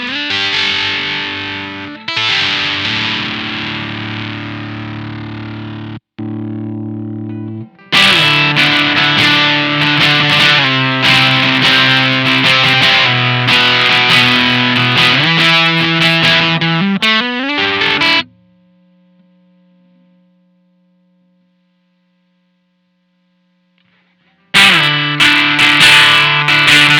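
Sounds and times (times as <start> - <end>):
fuzzed electric guitar riff: 0.0 - 18.4, 24.4 - 26.9
faint hum: 18.2 - 24.5.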